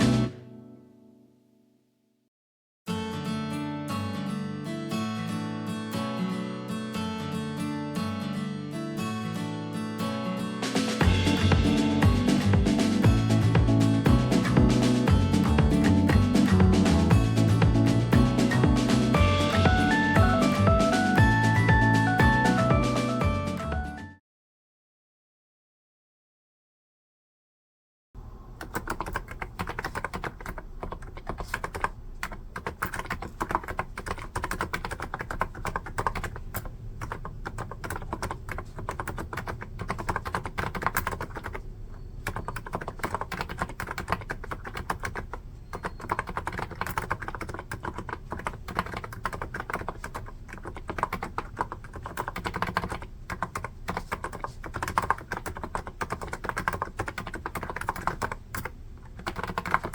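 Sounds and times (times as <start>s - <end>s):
fast keyboard typing: 11.0s - 23.8s, 28.5s - 59.9s.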